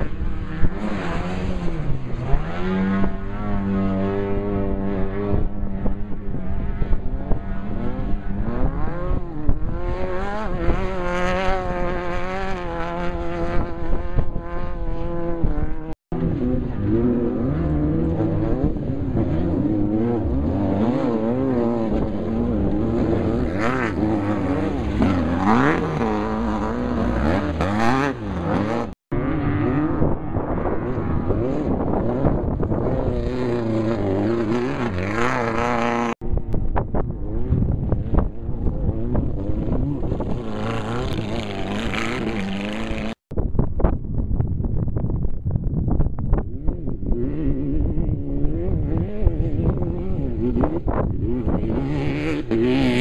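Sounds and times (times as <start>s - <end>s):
race vehicle engine revving: 0.0s - 36.2s.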